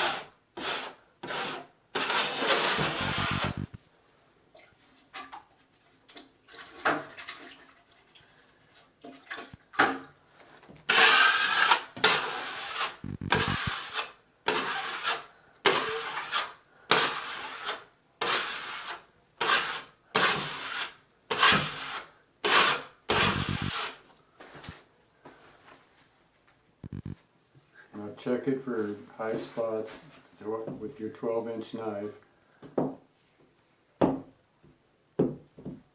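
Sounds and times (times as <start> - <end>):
drywall knife scraping compound: 0.0 - 3.6, 10.9 - 24.0.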